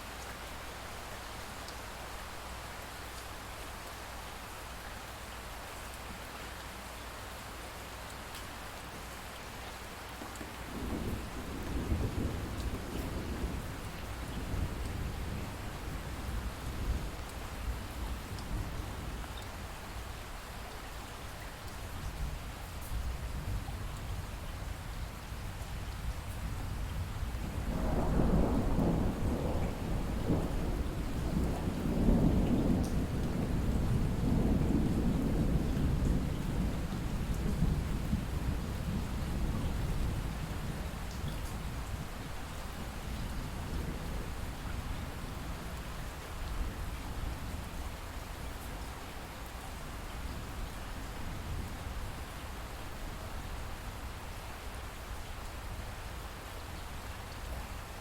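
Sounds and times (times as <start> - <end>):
steady rain falling: 0.0 - 58.0
rolling thunder: 10.7 - 16.0, 27.5 - 41.0.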